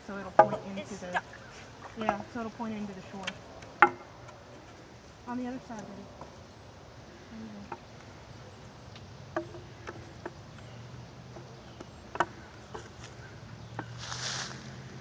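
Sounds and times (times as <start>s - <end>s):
short rustling: 13.8s - 14.9s.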